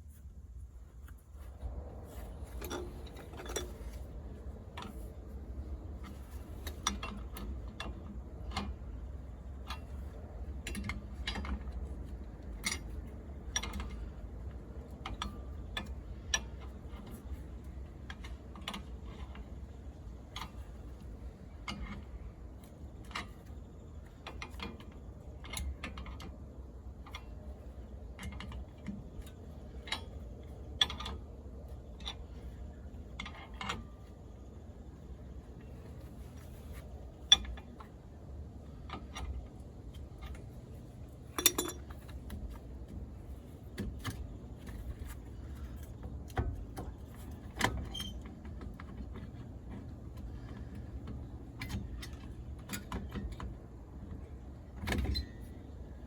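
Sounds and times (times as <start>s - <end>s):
steady low rumble: 0.0s - 47.6s
hand tools clicking and tapping: 41.3s - 43.0s.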